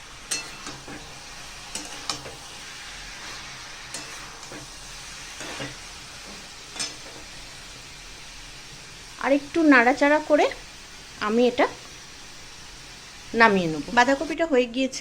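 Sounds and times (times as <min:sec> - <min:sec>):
frying sizzle: 0:00.0 - 0:15.0
spatula scraping a pan: 0:00.1 - 0:07.7.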